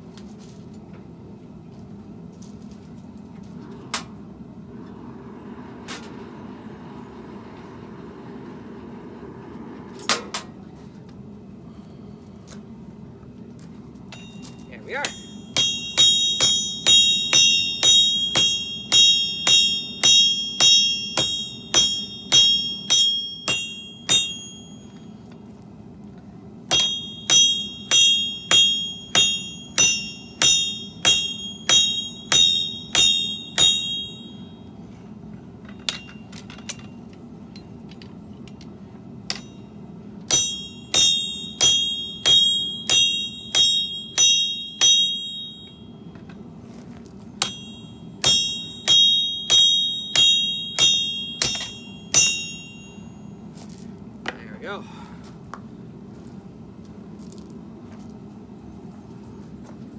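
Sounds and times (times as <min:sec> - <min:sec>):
hammer striking steel on anvil: 0:14.1 - 0:25.1, 0:26.7 - 0:34.7, 0:35.6 - 0:36.9, 0:39.3 - 0:46.4, 0:47.4 - 0:53.4.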